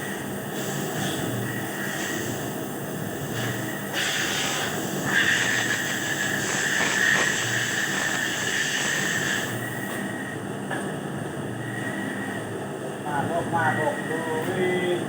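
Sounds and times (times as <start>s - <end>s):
hiss: 0.0s - 9.9s
machine squealing whine: 0.0s - 10.4s, 11.5s - 15.0s.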